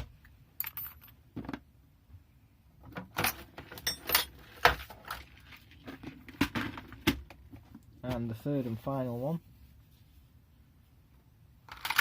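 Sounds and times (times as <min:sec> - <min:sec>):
small metal hardware clinking: 0:00.6 - 0:01.2, 0:03.2 - 0:04.4.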